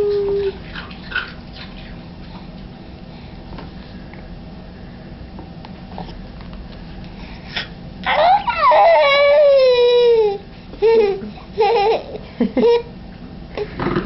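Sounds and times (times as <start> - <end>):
baby crying and whimpering: 8.0 - 12.9.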